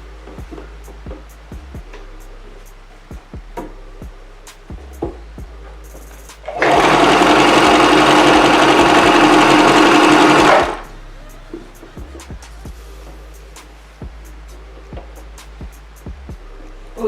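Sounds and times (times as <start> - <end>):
background music with a beat: 0.0 - 17.0
sewing machine running: 6.5 - 10.8.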